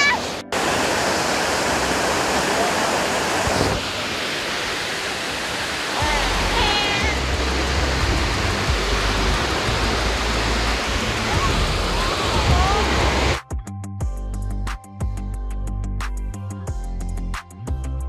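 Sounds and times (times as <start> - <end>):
waterfall rushing: 0.0 - 13.4.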